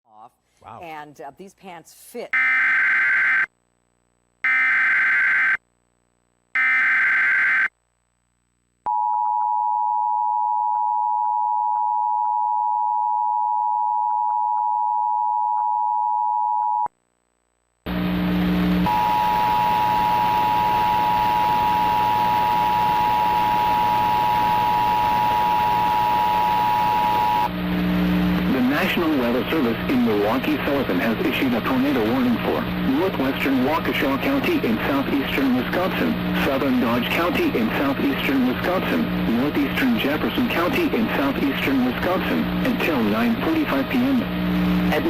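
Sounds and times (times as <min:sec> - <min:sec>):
hiss with low hum: 0:17.9 - 0:45.0.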